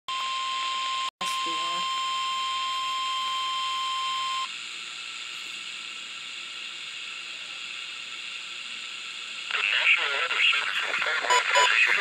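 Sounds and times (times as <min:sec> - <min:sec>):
steady single-pitched alarm tone: 0:00.1 - 0:04.6
radio hiss: 0:04.3 - 0:12.0.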